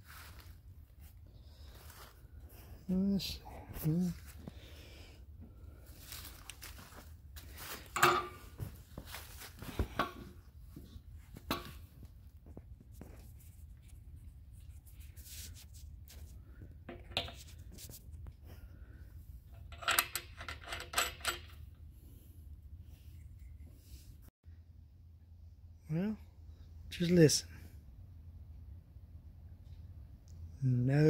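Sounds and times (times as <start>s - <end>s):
metal tools clinking: 7.8s - 8.8s, 19.5s - 21.6s.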